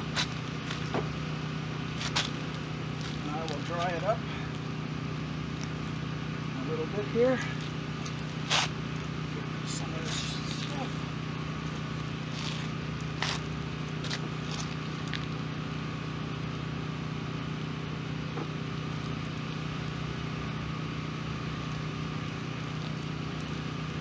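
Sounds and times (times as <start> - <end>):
mechanical hum: 0.0 - 24.0.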